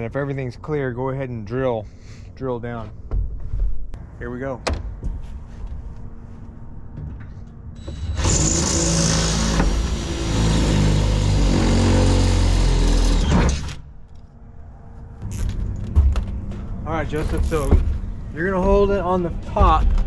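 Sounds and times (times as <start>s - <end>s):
electric drill boring: 7.8s - 13.8s.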